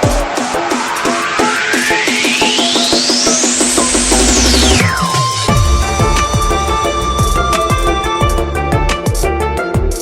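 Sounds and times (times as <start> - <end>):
falling synth sweep: 0.6 - 9.0
held synth tones: 2.0 - 8.9
steady drum beat: 3.8 - 10.0.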